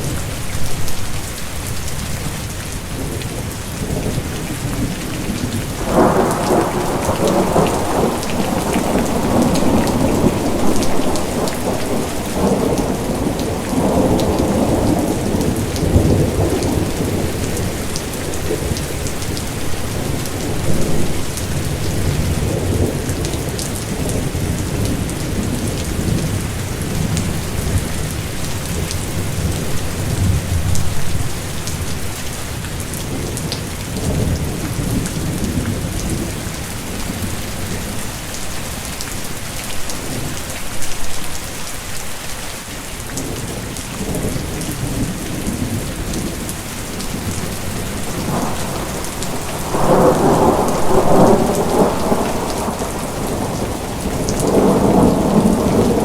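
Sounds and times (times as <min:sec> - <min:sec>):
heavy rain pattering: 0:00.0 - 0:56.0
rolling thunder rumble: 0:03.8 - 0:32.2, 0:44.0 - 0:56.0.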